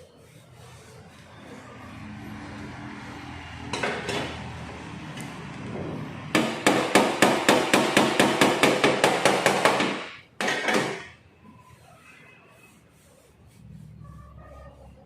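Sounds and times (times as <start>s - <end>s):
rapid hammering: 6.3s - 11.0s.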